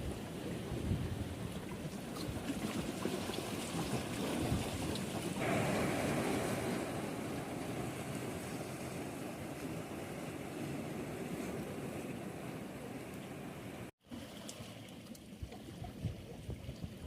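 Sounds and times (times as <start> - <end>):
sea waves washing in: 0.0 - 14.9
breaking surf: 3.6 - 13.9.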